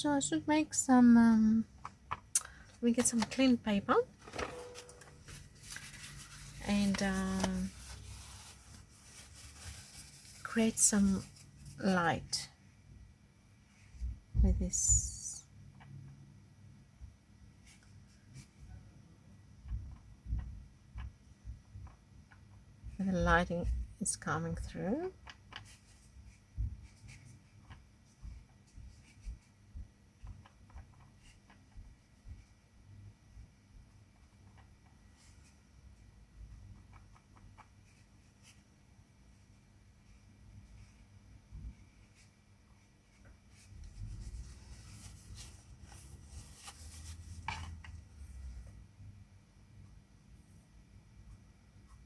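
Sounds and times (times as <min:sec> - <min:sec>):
scratchy brush strokes: 0:05.2 - 0:12.4, 0:39.5 - 0:48.8.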